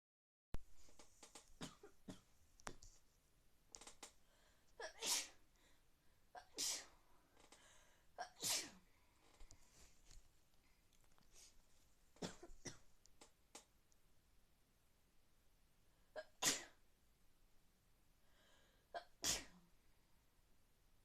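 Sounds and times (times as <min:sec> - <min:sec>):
person sneezing: 0:04.8 - 0:05.4, 0:06.4 - 0:07.0, 0:08.2 - 0:08.8, 0:16.2 - 0:16.8, 0:19.0 - 0:19.6.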